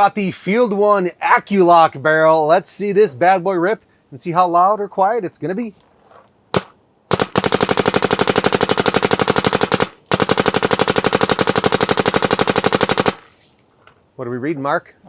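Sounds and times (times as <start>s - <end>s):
paintball marker firing: 6.6s - 13.3s.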